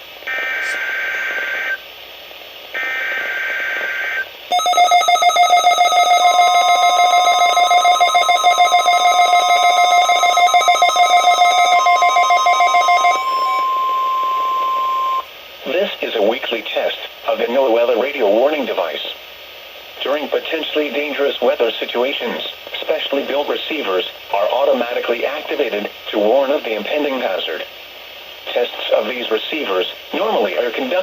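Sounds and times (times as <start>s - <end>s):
rapidly pulsing alarm: 2.8s - 15.3s
screeching data tones: 2.8s - 15.3s
steady warning tone: 2.8s - 15.3s.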